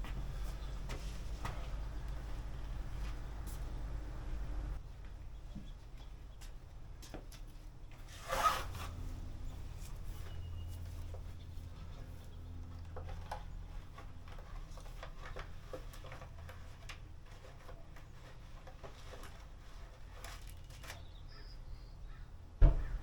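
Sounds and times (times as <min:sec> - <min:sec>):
steady low hum: 0:00.0 - 0:08.0
loud thud: 0:22.6 - 0:23.0.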